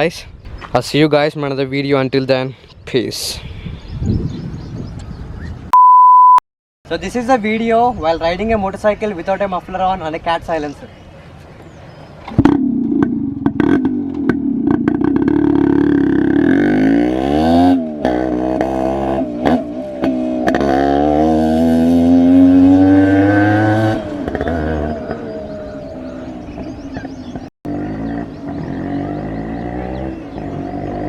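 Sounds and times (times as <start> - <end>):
two-stroke motorcycle engine accelerating: 12.3 - 31.0.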